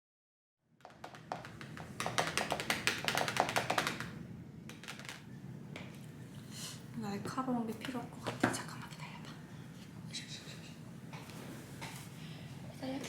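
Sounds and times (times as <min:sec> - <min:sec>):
fingers tapping and clicking on package: 0:00.8 - 0:05.2.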